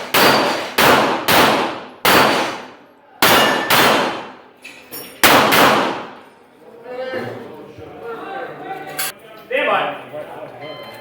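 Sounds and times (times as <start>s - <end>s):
pistol shots echoing: 0.0s - 4.5s, 5.2s - 6.2s.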